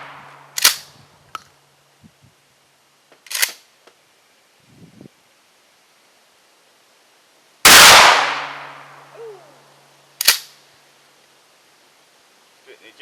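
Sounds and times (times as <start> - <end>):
shotgun shot echoing: 7.7 - 9.0.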